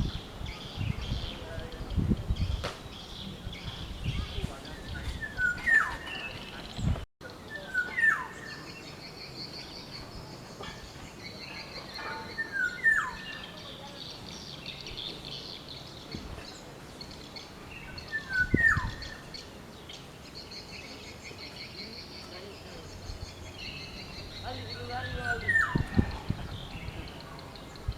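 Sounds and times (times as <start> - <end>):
bird singing fluty phrase: 17.0 - 27.9.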